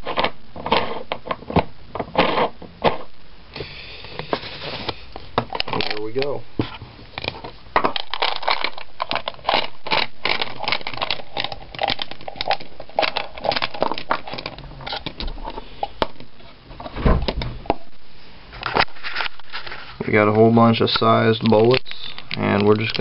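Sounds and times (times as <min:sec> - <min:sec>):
metal bullets clicking and rattling: 0:07.2 - 0:15.6
low thump: 0:17.0 - 0:17.6.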